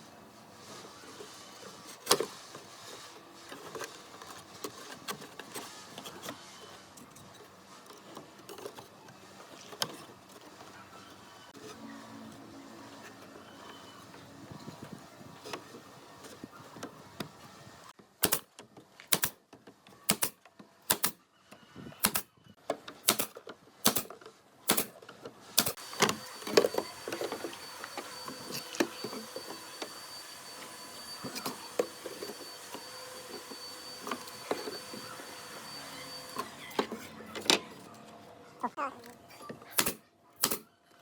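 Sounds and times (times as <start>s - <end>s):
high-pitched tool whine: 25.8s - 37.0s.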